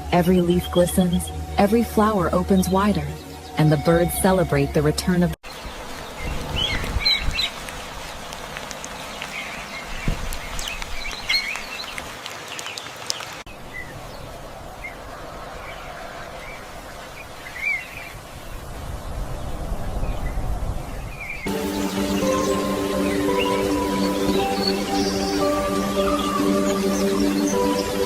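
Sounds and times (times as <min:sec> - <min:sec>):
music: 0:00.0 - 0:05.4, 0:21.5 - 0:28.0
steady outdoor hiss: 0:05.4 - 0:19.9, 0:21.4 - 0:28.0
wild birds chirping: 0:05.4 - 0:28.0.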